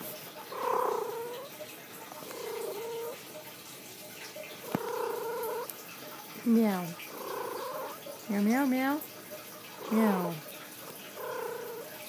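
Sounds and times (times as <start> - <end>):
cat trilling: 0.5 - 1.5, 2.2 - 3.2, 4.6 - 5.7, 7.0 - 8.1, 11.1 - 12.0.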